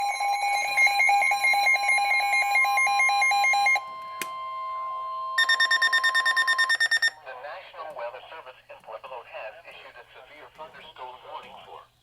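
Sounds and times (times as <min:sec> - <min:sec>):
steady alarm tone: 0:00.0 - 0:07.2
higher faster beeping: 0:05.4 - 0:07.2.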